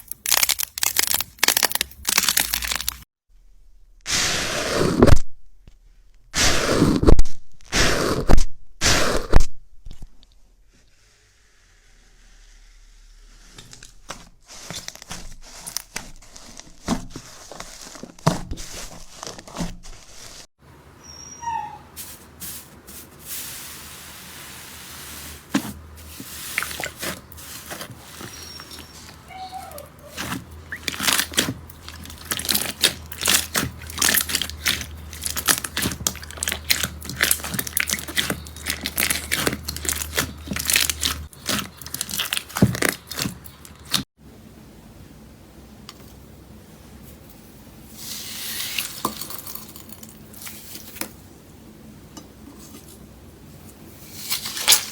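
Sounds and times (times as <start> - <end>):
faint short squeaks: 21.0 - 22.0, 28.2 - 30.3
slime squeezed with sticky pops: 30.1 - 44.0.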